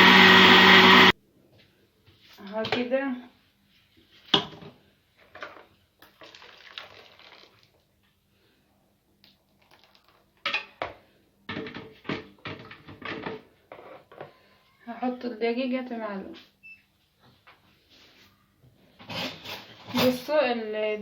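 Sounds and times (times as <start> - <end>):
utensils clattering against bowl: 19.0 - 20.4.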